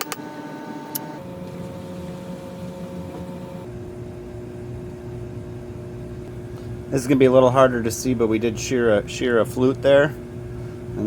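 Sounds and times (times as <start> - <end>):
electric motor humming: 0.0 - 4.1.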